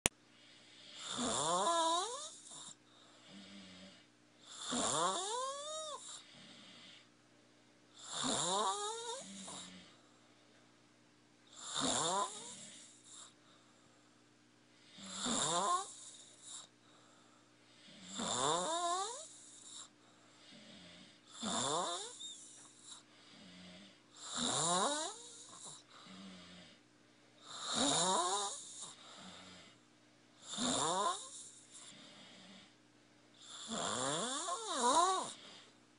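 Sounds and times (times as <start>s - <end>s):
child snoring: 0.6s - 7.1s, 8.0s - 10.0s, 11.5s - 13.4s, 14.9s - 16.7s, 17.8s - 19.9s, 20.5s - 26.8s, 27.4s - 29.8s, 30.4s - 32.8s, 33.4s - 35.7s.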